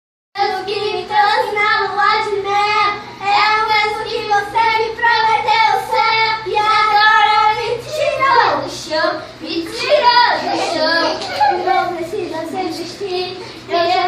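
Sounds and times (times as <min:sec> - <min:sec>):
faint low hum: 0:00.4 - 0:14.0
girls singing together: 0:00.4 - 0:14.0.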